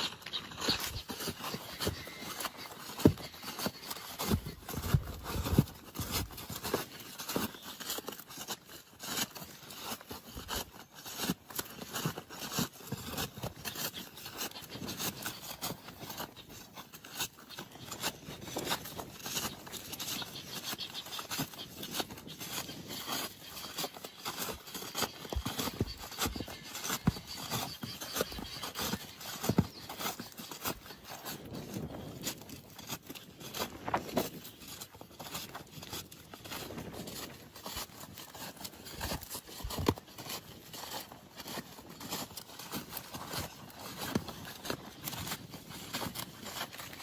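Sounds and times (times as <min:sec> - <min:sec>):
roofing taps and scrapes: 0:00.0 - 0:10.0, 0:14.4 - 0:31.0.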